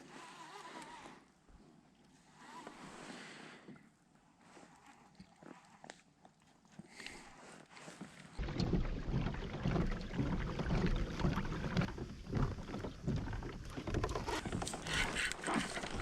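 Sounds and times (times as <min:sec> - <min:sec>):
water sloshing against hull: 0:07.5 - 0:16.0.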